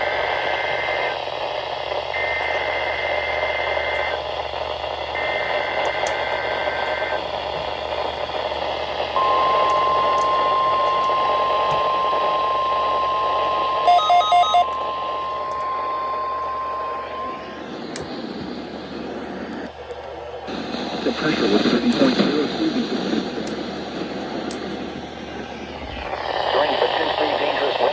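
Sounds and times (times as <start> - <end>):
steady warning alarm tone: 0.0 - 18.8
radio static: 0.0 - 27.9
quick beeps: 9.2 - 17.5.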